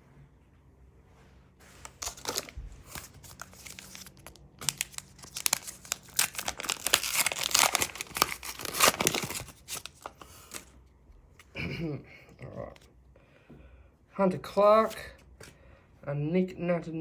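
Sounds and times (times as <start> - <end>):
wrapper tearing and crinkling: 1.7 - 10.7.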